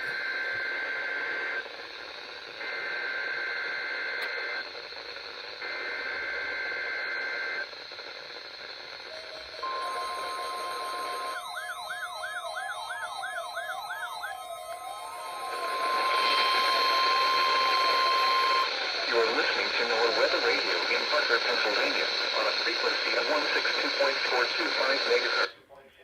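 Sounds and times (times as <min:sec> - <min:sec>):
warbling siren alarm: 0:08.8 - 0:20.6
screeching two-tone data bursts: 0:08.8 - 0:25.1
steady warning alarm tone: 0:08.8 - 0:25.4.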